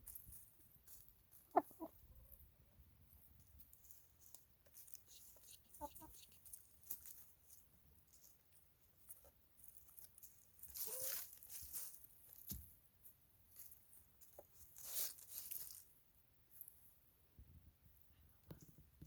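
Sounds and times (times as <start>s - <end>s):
chickens scratching in leaves: 3.6s - 12.5s, 13.5s - 16.0s
crackling scuffles: 9.0s - 12.6s, 13.5s - 15.9s.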